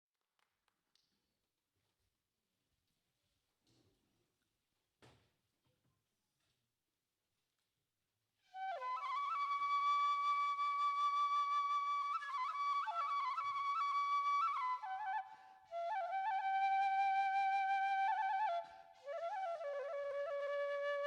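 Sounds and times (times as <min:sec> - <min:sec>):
bamboo flute melody: 0:08.5 - 0:21.0.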